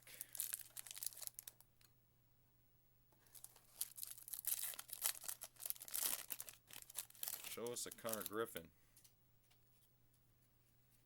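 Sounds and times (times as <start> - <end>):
foil wrapper tearing and crinkling: 0.0 - 1.6, 3.3 - 8.5.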